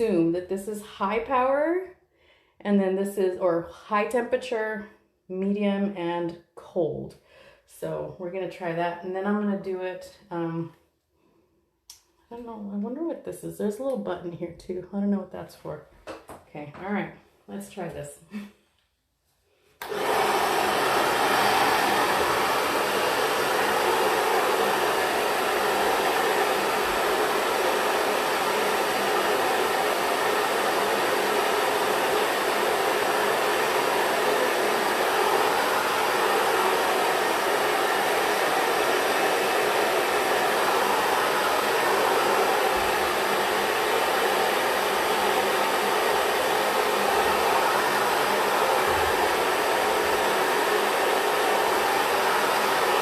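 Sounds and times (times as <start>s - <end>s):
hair dryer running: 19.8s - 53.0s.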